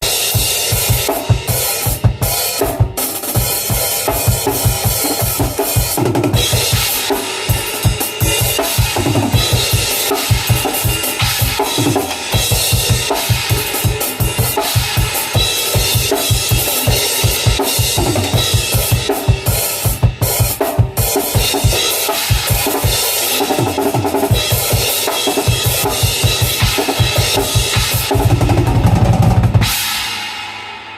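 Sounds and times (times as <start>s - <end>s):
ringing cymbals: 29.6s - 30.9s.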